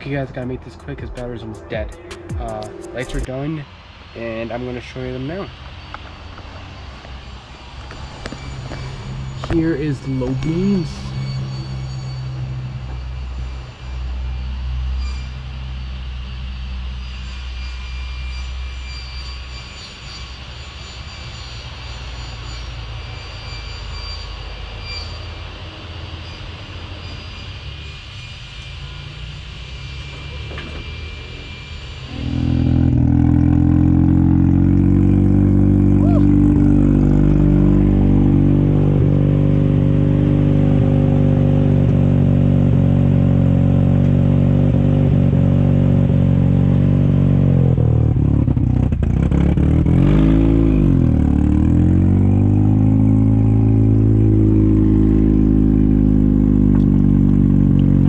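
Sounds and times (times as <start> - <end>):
rotary engine running loud: 0.0 - 58.0.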